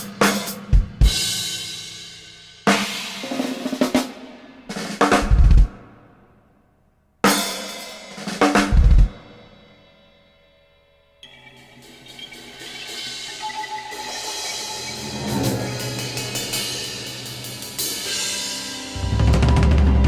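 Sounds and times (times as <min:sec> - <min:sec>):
cymbal crashes: 0:11.6 - 0:20.0.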